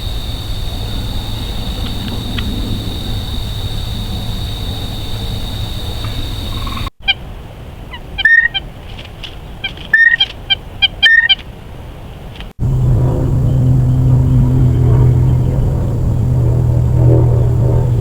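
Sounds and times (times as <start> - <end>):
high whine: 0.0 - 6.9, 12.6 - 18.0
steady hiss: 0.0 - 6.9
bird calls: 0.0 - 7.2, 7.9 - 8.7, 9.3 - 11.5.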